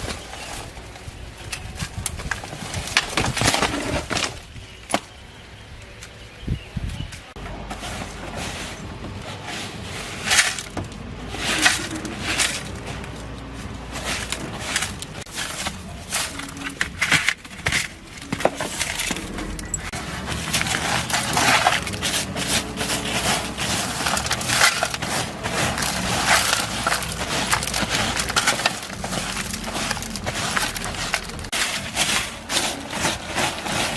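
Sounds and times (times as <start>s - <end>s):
tools knocking and scraping: 7.4s - 33.9s.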